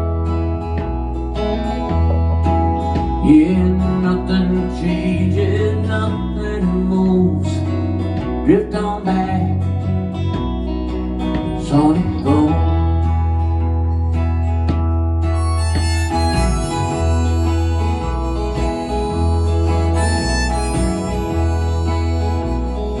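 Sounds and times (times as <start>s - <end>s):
live rock band playing: 0.0s - 8.6s, 14.0s - 23.0s
bass line: 0.0s - 23.0s
strummed acoustic guitar: 0.0s - 23.0s.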